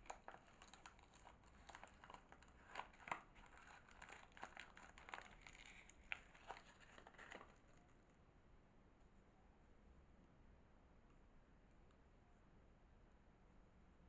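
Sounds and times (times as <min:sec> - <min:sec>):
packaging crinkling: 0:00.0 - 0:08.0.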